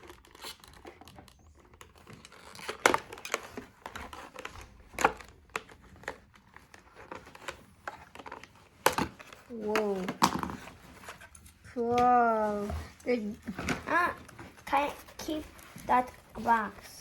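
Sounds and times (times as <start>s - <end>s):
packaging crinkling and crackling: 0.0s - 17.0s.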